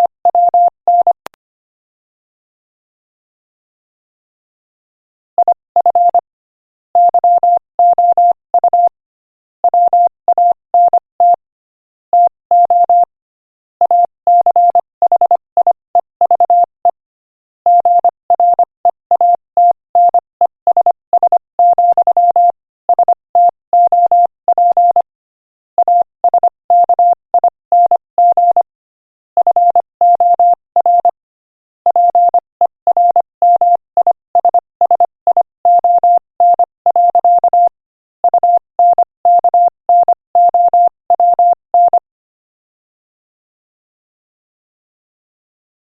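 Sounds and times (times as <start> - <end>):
morse code beeps: 0.0 - 1.3, 5.4 - 6.2, 7.0 - 9.0, 9.7 - 11.4, 12.2 - 13.1, 17.7 - 25.1, 25.8 - 28.7, 29.4 - 31.2, 31.9 - 42.0.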